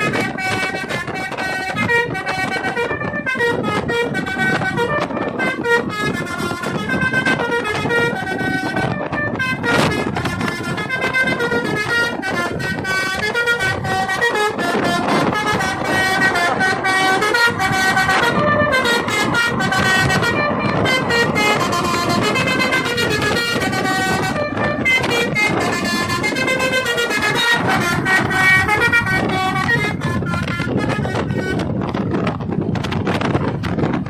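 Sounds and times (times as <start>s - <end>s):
multi-tone bus horn melody: 0.0s - 32.5s.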